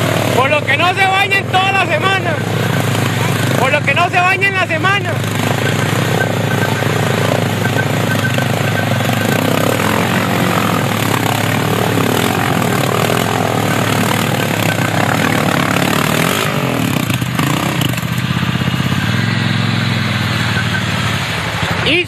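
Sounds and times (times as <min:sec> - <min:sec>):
atv engine running: 0:00.0 - 0:22.0.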